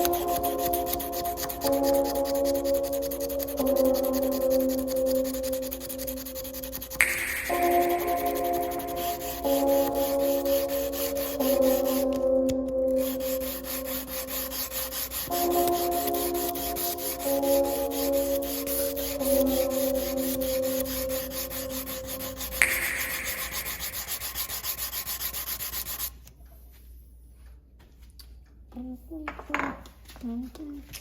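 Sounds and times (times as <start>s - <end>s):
sandpaper rubbing on steel: 0.0s - 12.3s, 12.9s - 26.1s
sharp tick: 7.0s - 10.4s, 22.5s - 24.6s.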